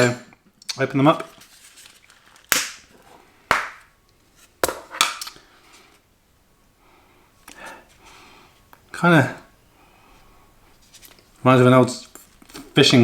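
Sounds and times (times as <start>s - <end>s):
container snapping open: 2.4s - 2.9s.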